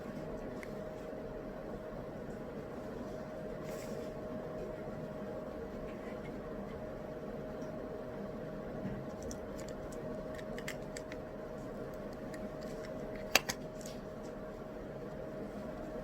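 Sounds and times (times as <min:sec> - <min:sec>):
faint hum: 0:00.0 - 0:16.0
light clicks of desk work: 0:08.8 - 0:14.4.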